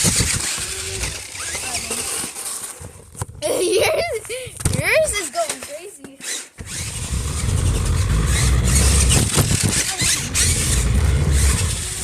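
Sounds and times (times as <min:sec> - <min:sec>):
remote-control truck motor rumbling: 0:00.0 - 0:03.4, 0:06.2 - 0:12.0.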